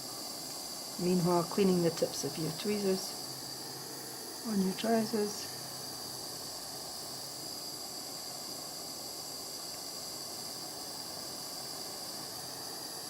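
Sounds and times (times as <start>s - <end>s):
torch flame hissing: 0.0s - 13.0s.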